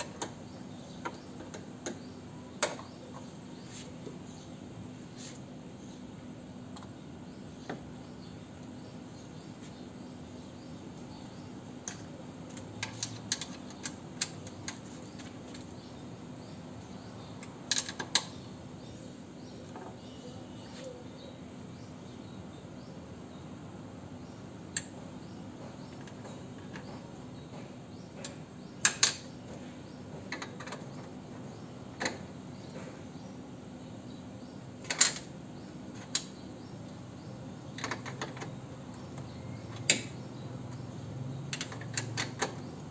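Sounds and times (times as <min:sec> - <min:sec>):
steady low hum: 0:00.0 - 0:42.9
tools clicking and tapping: 0:11.8 - 0:15.7, 0:25.6 - 0:31.1, 0:37.8 - 0:40.2, 0:41.4 - 0:42.7.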